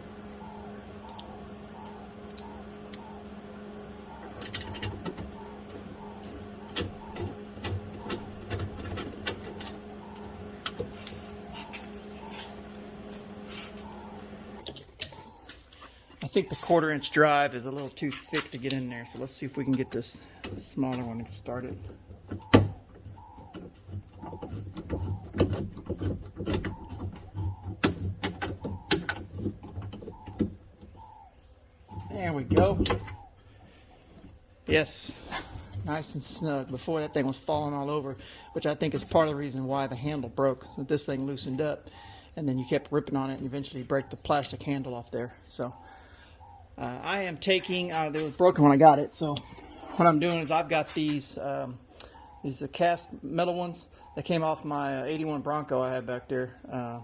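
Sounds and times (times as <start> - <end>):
faint repeating chirp: 0.0 - 15.5
steady background hum: 0.0 - 57.0.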